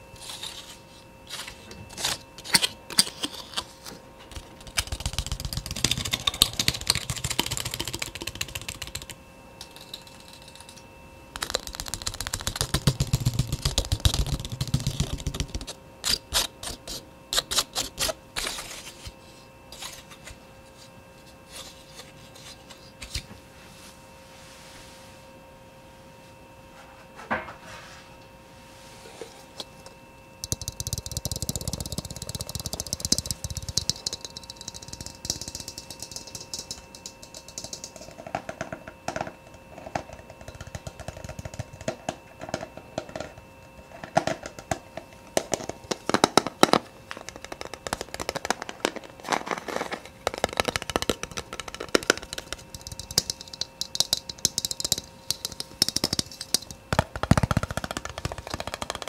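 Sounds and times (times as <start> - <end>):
fast tapping close to microphone: 4.3 - 9.2, 11.4 - 15.8, 30.4 - 43.4, 45.4 - 49.1, 50.1 - 59.0.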